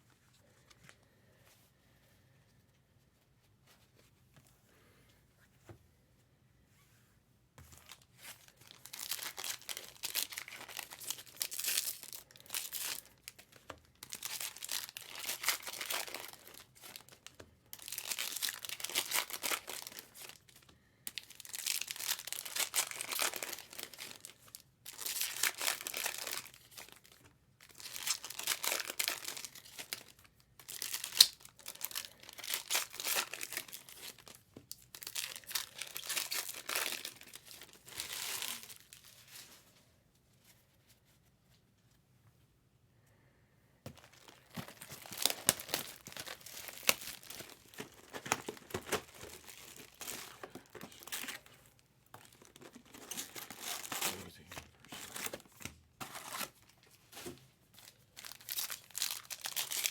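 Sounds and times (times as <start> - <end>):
foil wrappers tearing and crinkling: 7.9 - 39.1, 43.9 - 57.3, 58.2 - 59.9.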